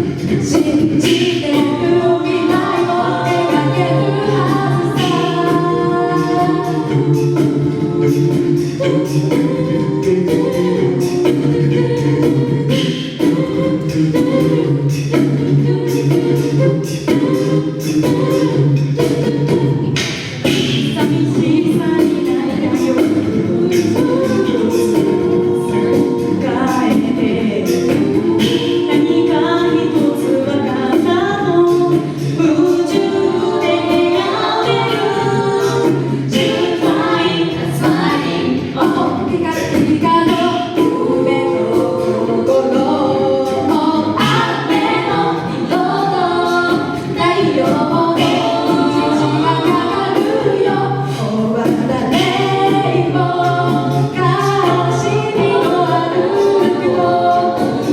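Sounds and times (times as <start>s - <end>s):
vocal group singing in harmony: 0.0s - 57.9s.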